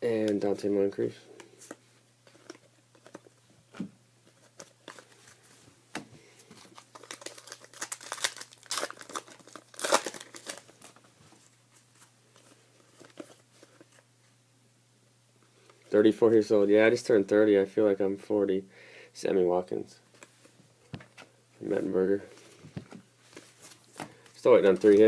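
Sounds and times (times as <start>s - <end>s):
plastic wrapper crinkling and tearing: 6.6s - 11.1s, 23.4s - 25.0s.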